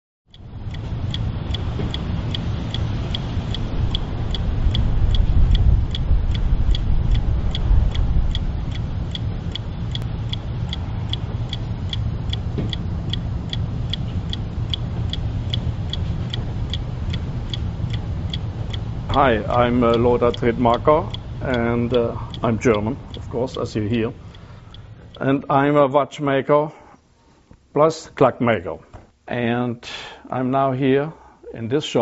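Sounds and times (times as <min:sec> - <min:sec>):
road traffic rumble: 0:00.3 - 0:25.4
clock ticking: 0:00.3 - 0:25.5.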